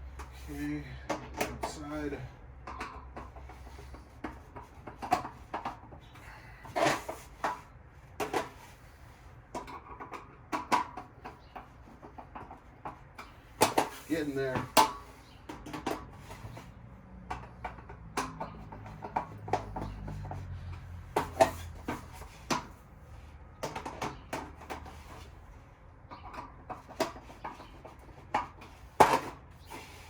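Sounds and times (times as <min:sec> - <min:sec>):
hand tools knocking on metal: 0:09.6 - 0:22.7.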